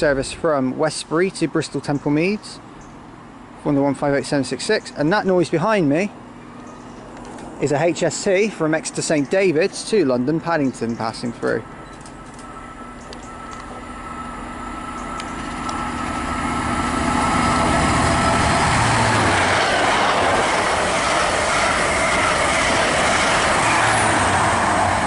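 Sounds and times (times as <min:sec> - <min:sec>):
diesel train passing: 0:00.0 - 0:25.0
wheels on rails: 0:10.9 - 0:25.0.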